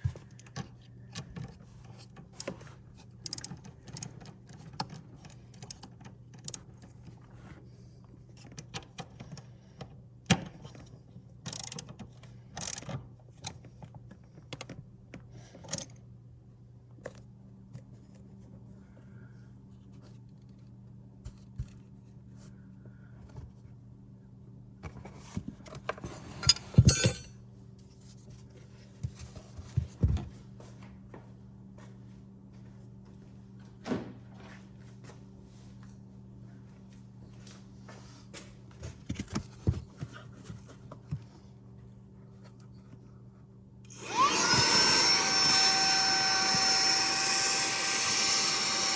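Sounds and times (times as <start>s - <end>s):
hand tools and metal parts clinking: 26.3s - 27.3s
rattling clatter: 26.4s - 27.3s.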